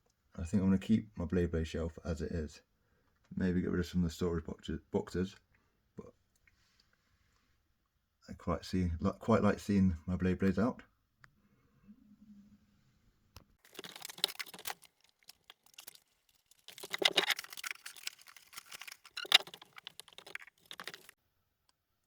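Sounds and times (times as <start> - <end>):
rustling of packaging: 13.6 - 21.2.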